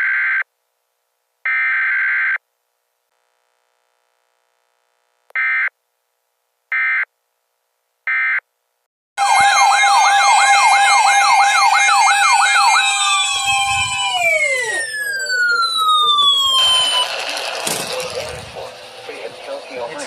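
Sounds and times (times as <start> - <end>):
electronic siren alarm: 9.2 - 17.7.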